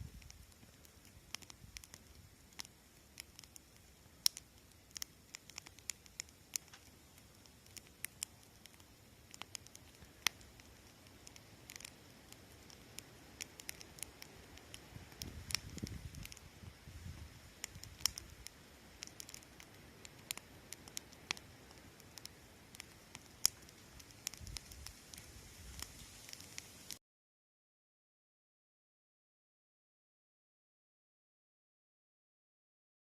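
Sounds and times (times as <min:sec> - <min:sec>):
wood fire crackling: 0:00.0 - 0:27.0.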